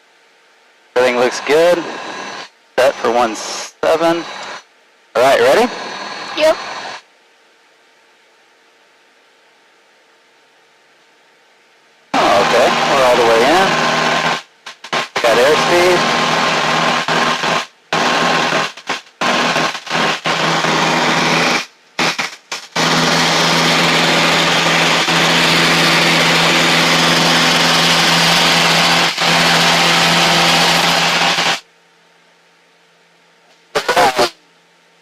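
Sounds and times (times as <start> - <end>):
faint hum: 0.0 - 25.0, 31.6 - 35.0
airplane engine drone: 0.9 - 7.0, 12.1 - 31.6, 33.7 - 34.4.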